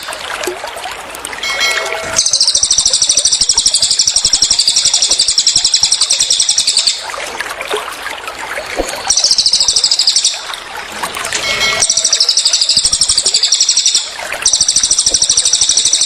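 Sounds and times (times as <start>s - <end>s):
water trickling: 0.0s - 16.0s
songbird rapid trill: 1.5s - 7.0s, 9.1s - 10.5s, 11.4s - 16.0s.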